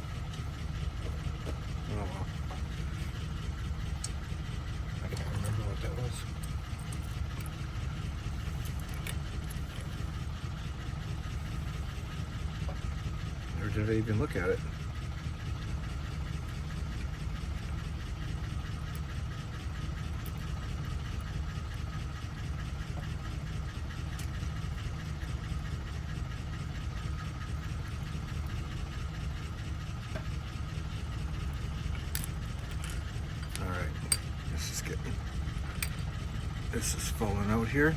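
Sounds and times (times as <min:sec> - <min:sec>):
engine idling hum: 0:00.0 - 0:37.9
small clicks of lock parts: 0:08.6 - 0:09.9, 0:31.9 - 0:34.3, 0:35.6 - 0:36.0.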